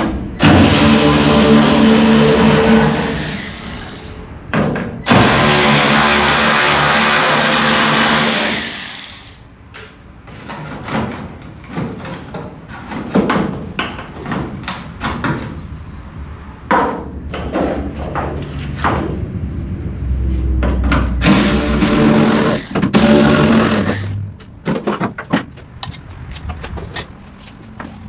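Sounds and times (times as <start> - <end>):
knocks and clanks on car body: 4.5 - 5.3, 10.3 - 15.7, 16.6 - 19.4, 20.5 - 21.4, 24.4 - 27.2.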